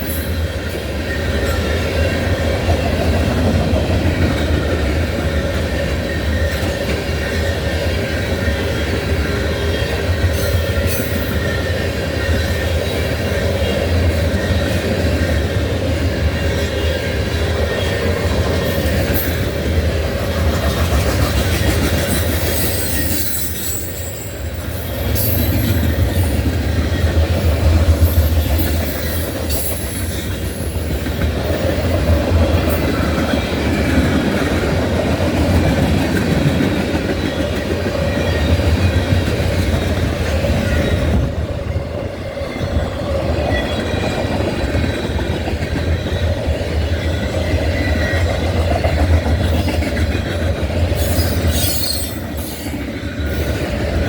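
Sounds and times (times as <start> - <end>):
train wheels rumbling on rail: 0.0 - 54.0
wheel squeals: 22.1 - 26.4, 51.0 - 53.6.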